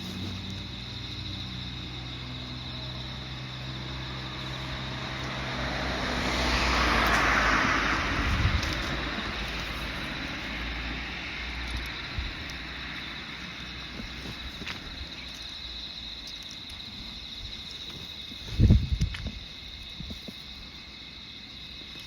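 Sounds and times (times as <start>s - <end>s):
car passing by: 0.2s - 14.4s.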